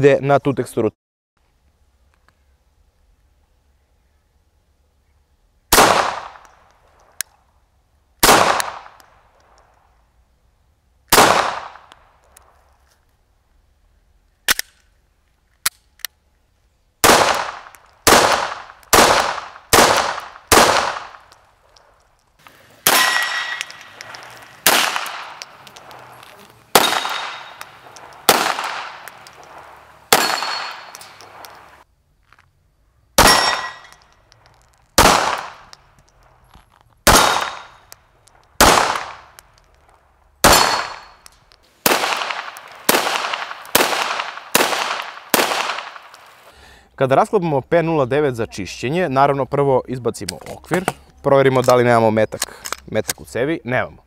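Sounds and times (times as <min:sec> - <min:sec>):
pistol shots: 0:05.7 - 0:06.5, 0:08.2 - 0:09.0, 0:11.1 - 0:12.0, 0:17.0 - 0:21.4, 0:22.8 - 0:31.8, 0:33.2 - 0:34.0, 0:35.0 - 0:36.2, 0:37.0 - 0:39.4, 0:40.4 - 0:46.3
small clicks: 0:23.6 - 0:26.6, 0:33.8 - 0:40.0.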